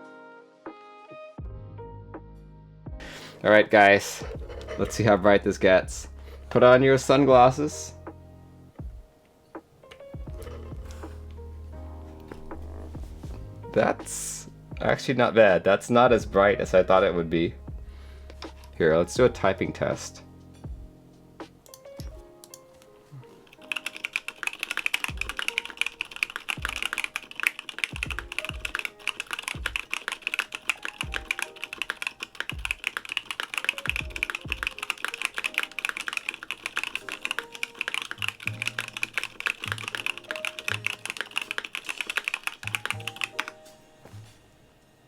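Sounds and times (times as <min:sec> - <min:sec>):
background music: 0:00.0 - 0:45.0
mechanical keyboard typing: 0:23.4 - 0:43.6.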